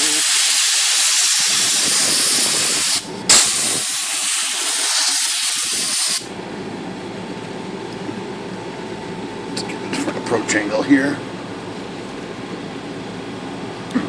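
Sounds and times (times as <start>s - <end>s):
compressed air hissing: 0.0s - 6.3s.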